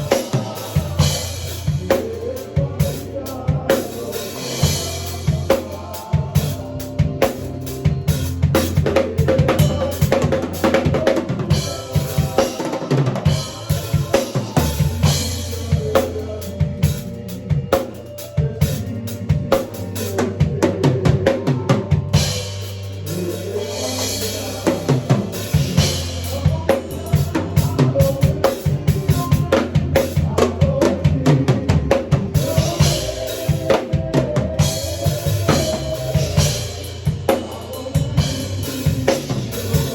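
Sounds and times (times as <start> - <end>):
bass notes: 0.0 - 39.9
drum kit played fast: 0.0 - 39.9
held chords: 0.0 - 39.9.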